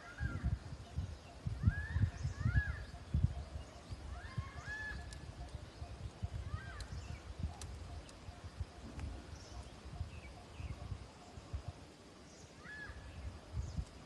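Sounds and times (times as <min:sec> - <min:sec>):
birds chirping: 0:00.0 - 0:14.0
faint clicks: 0:05.0 - 0:05.6, 0:06.6 - 0:09.2.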